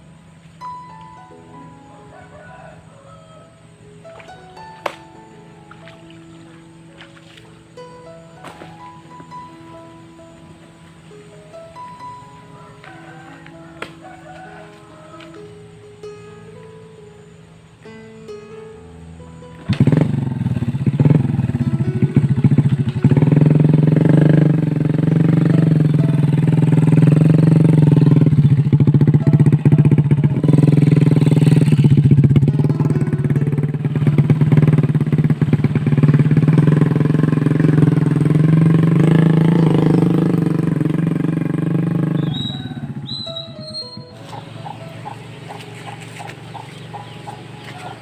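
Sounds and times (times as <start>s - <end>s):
small motorcycle engine running: 19.5s - 48.0s.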